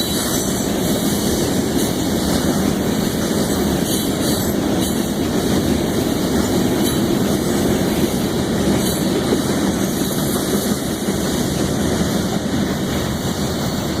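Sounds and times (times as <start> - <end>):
rail joint clicks: 0.0 - 14.0
steel wheels rumbling on rails: 0.0 - 14.0.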